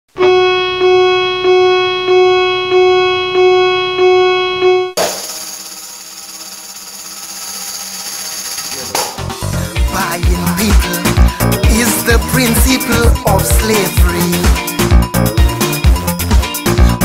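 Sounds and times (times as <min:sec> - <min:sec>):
steady high shimmer: 0:05.0 - 0:14.4.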